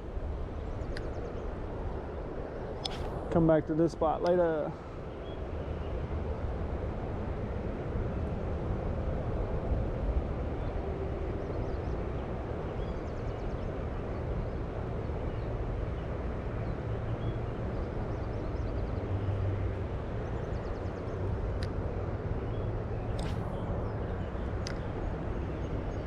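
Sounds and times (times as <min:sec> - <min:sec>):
sharp click: 0:02.8 - 0:03.3, 0:23.1 - 0:23.6.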